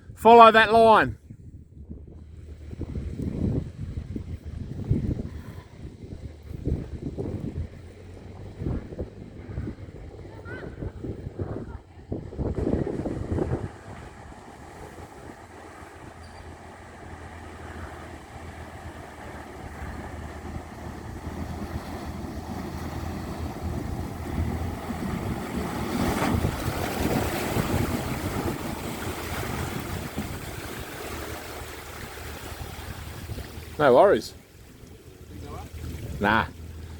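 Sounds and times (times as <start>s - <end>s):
vehicle engine running: 2.1s - 36.9s
water washing and splashing: 12.5s - 36.9s.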